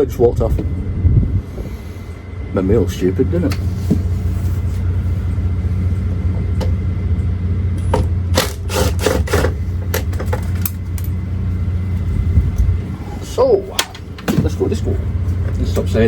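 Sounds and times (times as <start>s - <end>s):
diesel truck engine idling: 0.0s - 16.0s.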